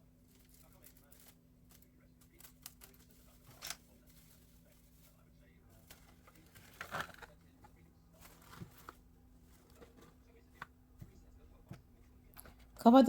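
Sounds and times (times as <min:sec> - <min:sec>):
cling film crinkling: 0:00.2 - 0:10.6.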